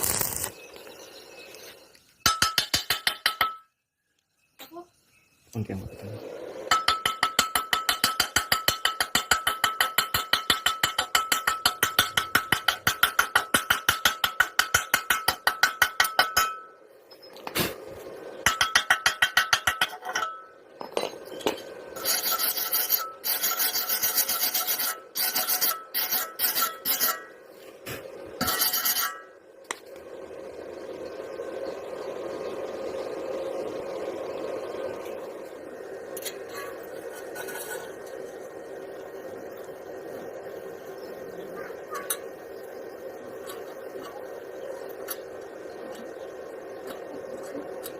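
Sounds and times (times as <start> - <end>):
rapid rasping strokes: 22.0 - 29.3.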